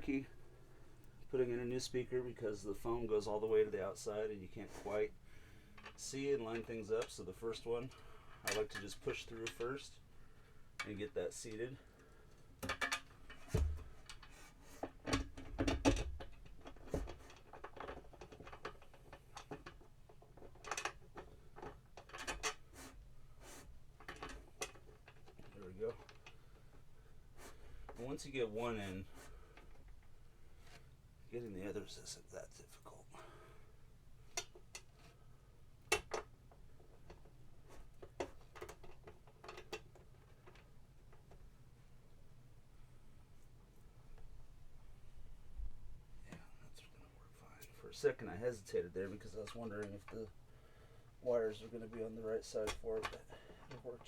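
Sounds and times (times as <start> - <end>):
speaker frame clicks and taps: 12.6 - 22.6
speaker handled clicks and knocks: 12.6 - 22.6, 24.0 - 26.8, 34.3 - 35.1, 35.8 - 41.4, 51.9 - 53.9.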